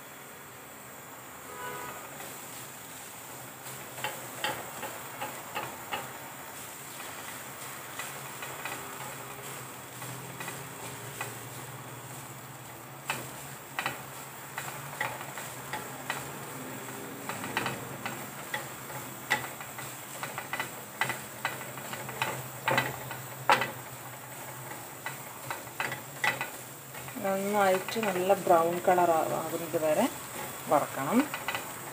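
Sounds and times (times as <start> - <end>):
coconut hissing in pan: 0.0 - 31.9
spoon scraping and tapping pan: 3.6 - 6.2, 6.9 - 12.4, 13.0 - 31.9.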